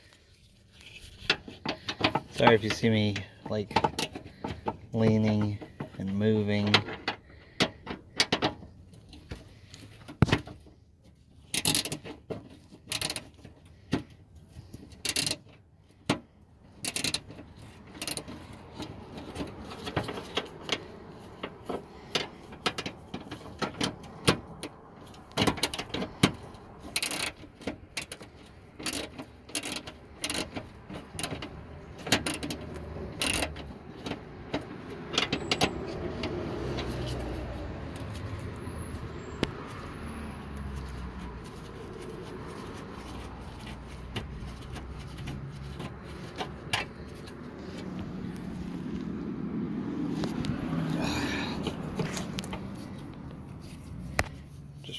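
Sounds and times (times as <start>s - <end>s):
socket ratchet clicking: 14.9s - 15.4s, 16.8s - 21.0s, 22.1s - 38.6s.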